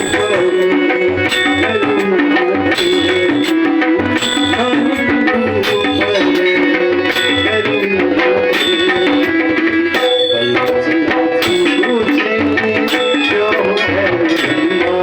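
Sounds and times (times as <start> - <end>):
tabla strokes: 0.0 - 15.0
wavering melody line: 0.0 - 15.0.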